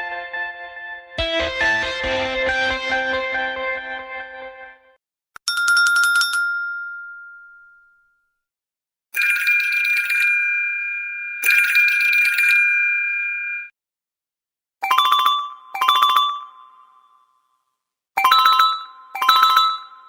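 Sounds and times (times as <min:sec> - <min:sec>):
telephone ringing: 0:05.5 - 0:07.6, 0:09.2 - 0:13.7, 0:18.2 - 0:20.0
bell-like ringtone ding: 0:05.5 - 0:08.3, 0:14.8 - 0:17.4, 0:18.2 - 0:20.0.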